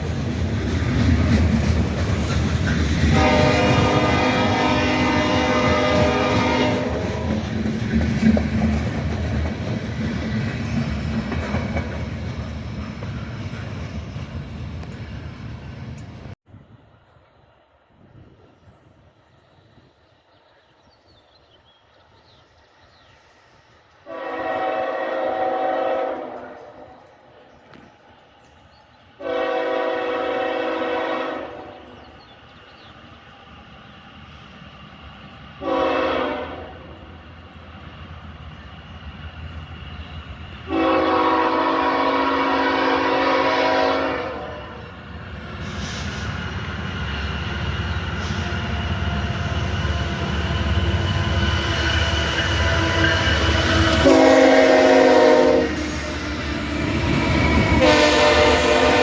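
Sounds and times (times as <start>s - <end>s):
train rolling on rails: 0.0s - 59.0s
locomotive air horn: 3.1s - 7.4s, 24.1s - 27.0s, 29.2s - 31.9s, 35.6s - 37.0s, 40.7s - 45.0s, 51.6s - 59.0s.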